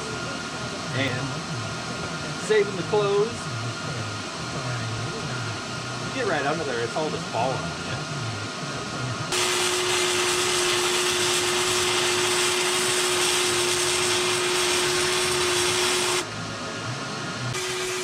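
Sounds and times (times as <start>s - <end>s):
welding arc hissing: 9.3s - 18.0s.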